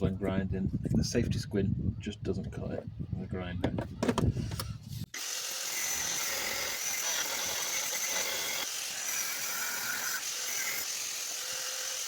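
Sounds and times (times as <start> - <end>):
angle grinder grinding metal: 5.1 - 12.0.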